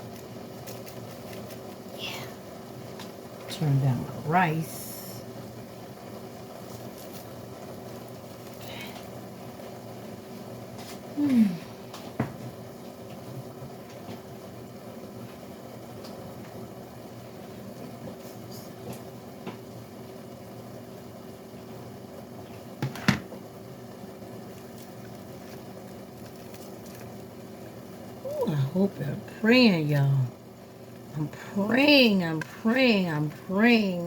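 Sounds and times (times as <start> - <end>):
kitchen appliance humming: 0.0 - 34.0
dish knocking on counter: 22.8 - 23.3.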